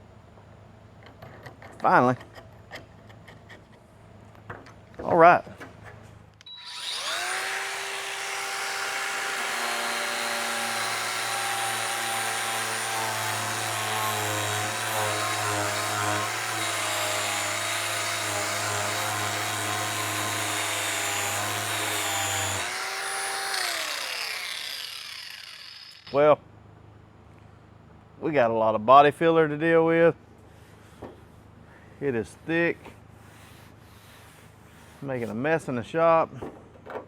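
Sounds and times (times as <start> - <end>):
angle grinder grinding: 6.5 - 26.2.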